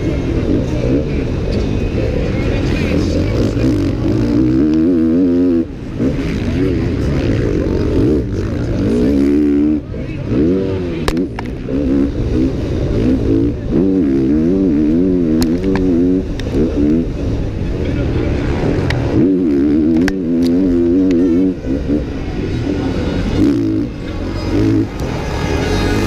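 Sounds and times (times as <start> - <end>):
motocross bike engine revving: 0.0 - 26.0.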